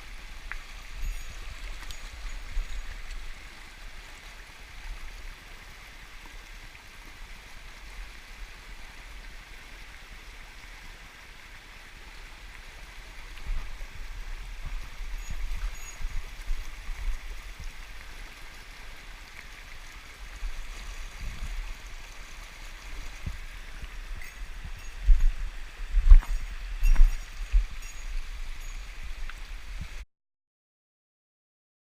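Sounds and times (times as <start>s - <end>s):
mountain stream rushing: 0.0s - 30.0s.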